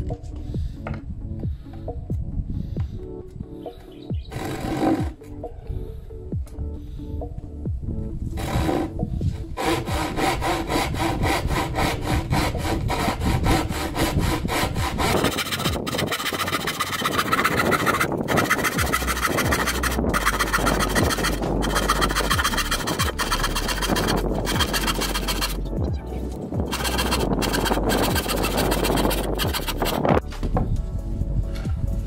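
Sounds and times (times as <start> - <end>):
handsaw cutting wood: 4.3 - 5.2, 8.4 - 9.0, 9.6 - 25.6, 26.6 - 30.1.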